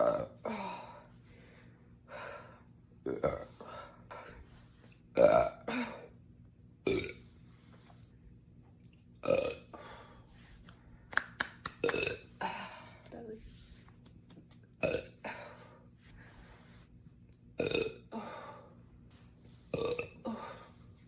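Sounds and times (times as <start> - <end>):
woman burping: 0.0 - 0.6, 3.0 - 3.5, 5.2 - 6.1, 9.2 - 9.7, 11.9 - 12.5, 14.8 - 15.4, 17.6 - 18.2, 19.8 - 20.5.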